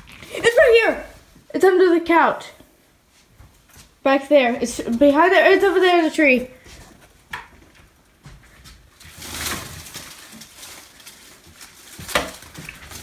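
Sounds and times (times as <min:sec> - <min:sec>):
rustling: 0:04.7 - 0:13.0.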